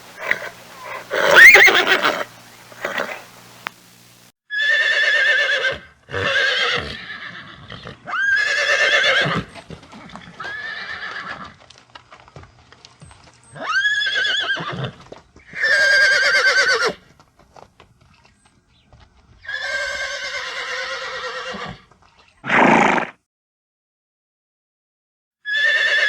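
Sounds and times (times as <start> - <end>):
horse whinnying: 0.2 - 3.3, 4.5 - 11.6, 13.6 - 17.1, 19.4 - 23.2, 25.4 - 26.0.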